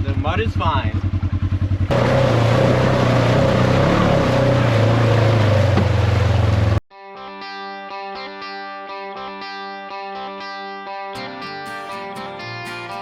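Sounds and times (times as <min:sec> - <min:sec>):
vehicle engine running under load: 0:00.0 - 0:06.8.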